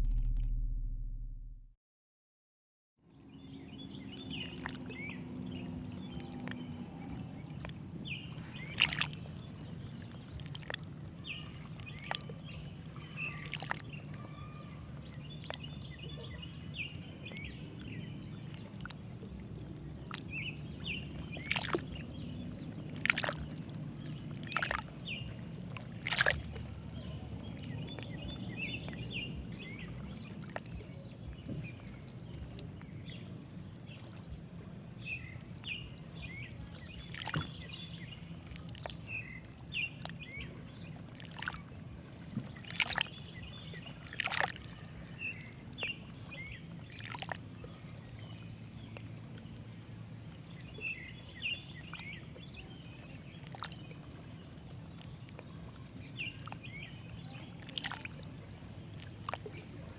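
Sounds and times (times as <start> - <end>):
faint high chirping: 0.0 - 1.1
sharp clicks: 0.0 - 1.6
steady low hum: 0.0 - 1.7.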